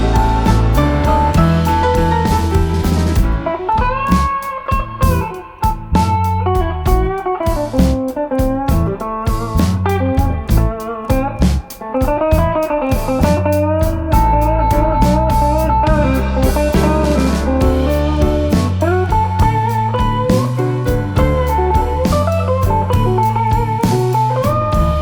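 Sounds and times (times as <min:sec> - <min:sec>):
held bass note: 0:00.0 - 0:04.3, 0:13.2 - 0:25.0
guitar background music: 0:00.0 - 0:25.0
steady beat: 0:00.0 - 0:25.0.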